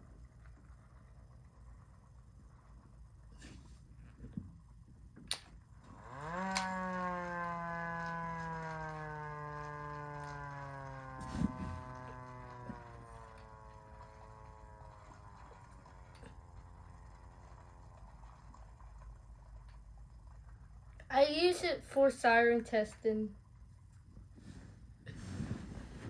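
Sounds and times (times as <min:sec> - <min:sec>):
siren wailing: 0:05.8 - 0:19.0.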